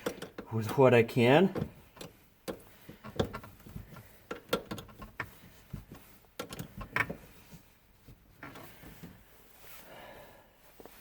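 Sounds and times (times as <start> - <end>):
clicks and knocks of parts: 0.0 - 0.8, 1.5 - 7.4.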